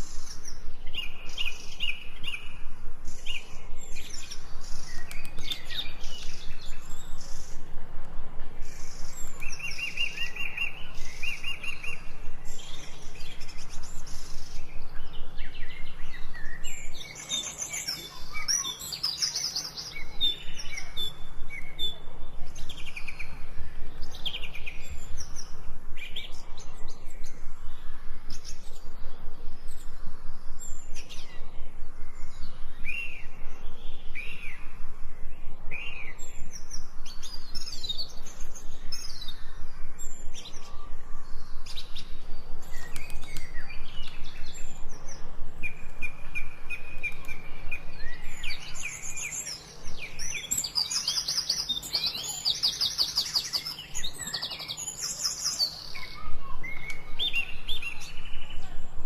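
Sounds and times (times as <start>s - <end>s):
forest birds chirping and singing: 0.0s - 59.0s.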